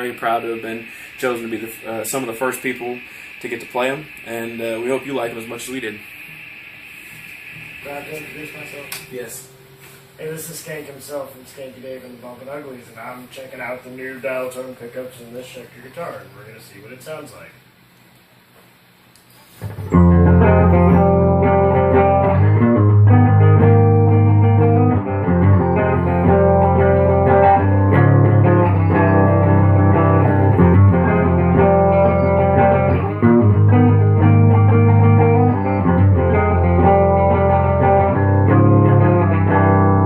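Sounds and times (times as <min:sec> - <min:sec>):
electric guitar chords: 0:06.3 - 0:11.2, 0:19.6 - 0:40.0.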